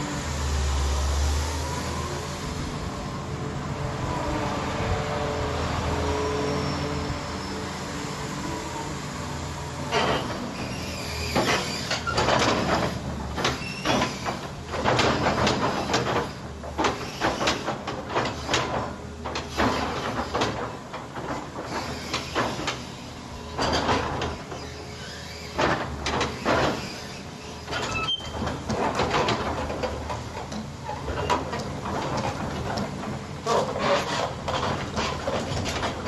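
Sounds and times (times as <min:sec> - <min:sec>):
excavator diesel engine running: 0:00.0 - 0:36.0
metallic clanks and scraping: 0:09.9 - 0:22.8, 0:23.5 - 0:36.0.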